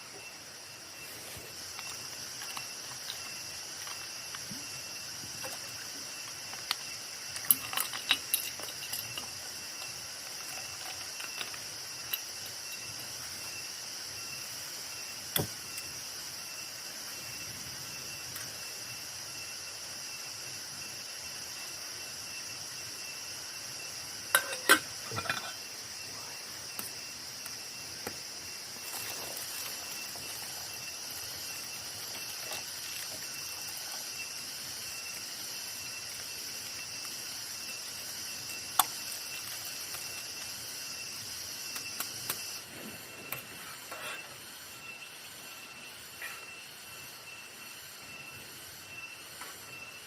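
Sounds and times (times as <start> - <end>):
crickets trilling: 0.0 - 50.0
sharp clicks and clinks: 5.4 - 13.0, 24.3 - 25.6.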